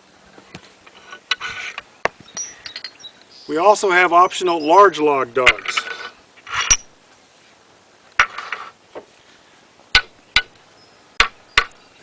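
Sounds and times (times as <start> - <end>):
metal strikes on log dogs: 5.4 - 7.0, 8.2 - 9.1, 9.9 - 10.6, 11.2 - 11.8.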